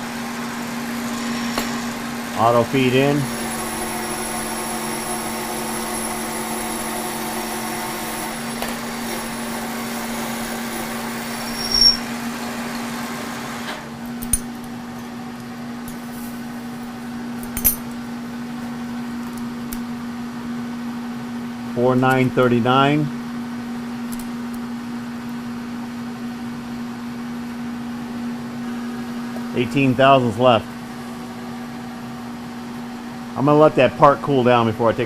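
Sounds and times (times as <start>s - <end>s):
milling machine humming: 0.0s - 15.3s.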